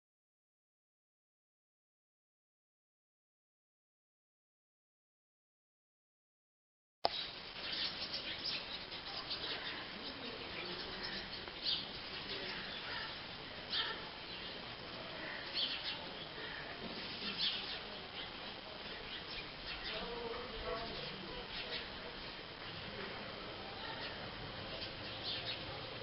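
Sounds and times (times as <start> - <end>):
steady background hiss: 7.1 - 26.0.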